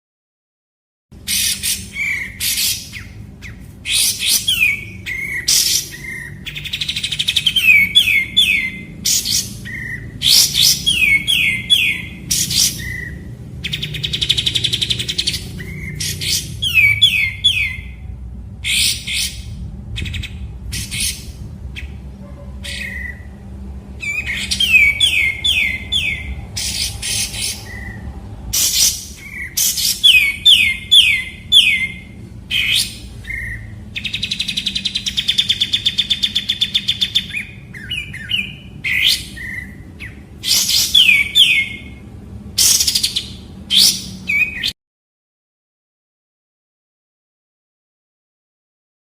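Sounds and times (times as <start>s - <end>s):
bird whistled notes: 1.3s - 18.0s, 18.6s - 23.3s, 24.0s - 28.0s, 28.6s - 41.9s.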